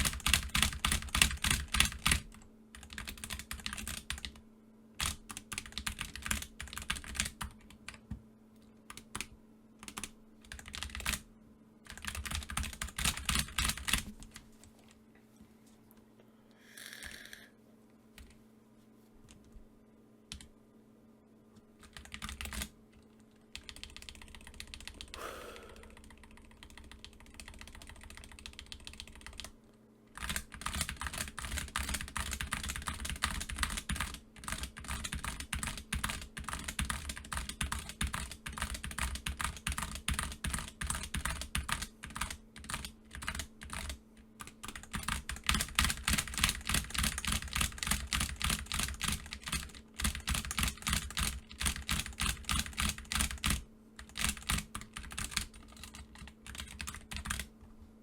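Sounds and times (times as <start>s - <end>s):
typing on computer keyboard: 0.0s - 4.4s, 5.0s - 8.2s, 8.9s - 11.2s, 11.9s - 14.4s, 21.8s - 25.2s, 25.9s - 29.5s, 30.2s - 57.5s.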